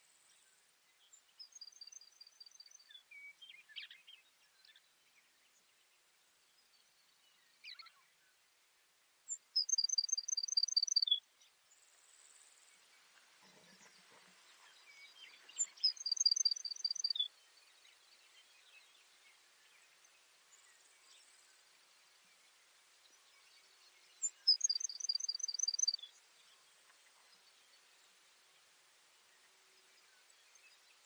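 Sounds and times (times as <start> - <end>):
sparrow singing trill: 9.3 - 11.2, 14.6 - 17.4, 23.4 - 26.6.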